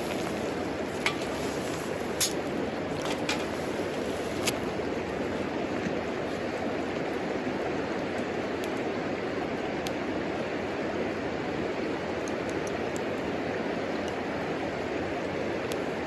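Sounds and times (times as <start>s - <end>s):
wood fire crackling and popping: 0.0s - 8.9s.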